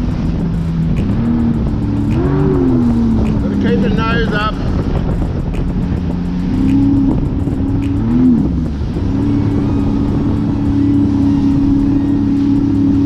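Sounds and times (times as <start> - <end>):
jet ski engine running: 0.0 - 13.0.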